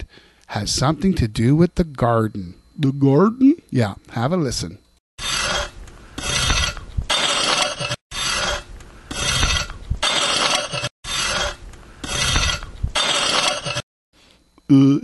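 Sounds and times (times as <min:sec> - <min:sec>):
hoe scraping soil: 0:05.2 - 0:13.8.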